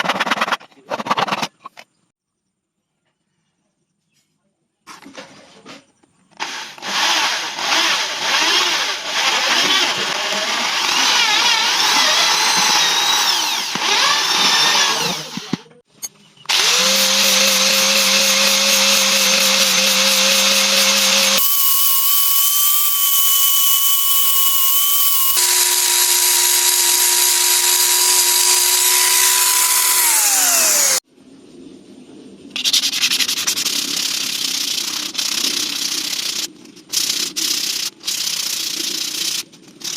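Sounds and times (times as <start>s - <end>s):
electric power tool running: 6.4s - 15.6s, 16.5s - 31.0s.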